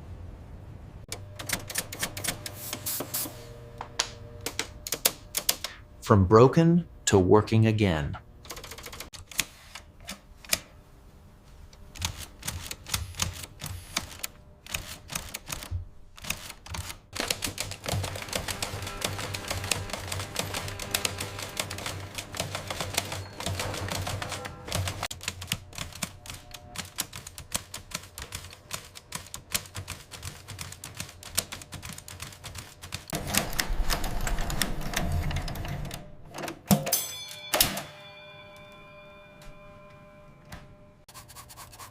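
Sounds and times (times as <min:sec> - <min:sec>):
typewriter keys clacking: 0:01.1 - 0:02.9, 0:04.4 - 0:05.7, 0:08.4 - 0:09.5, 0:12.0 - 0:37.8.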